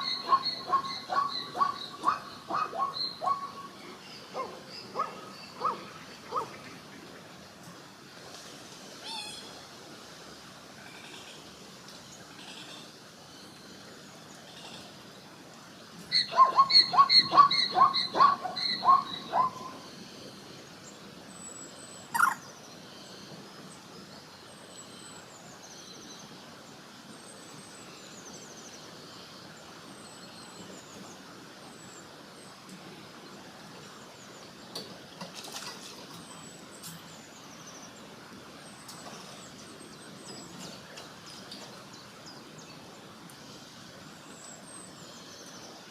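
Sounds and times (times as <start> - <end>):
zebra barking call: 0.0 - 3.6, 16.2 - 19.7, 22.1 - 22.4
small birds chirping: 0.0 - 6.7, 21.8 - 23.4.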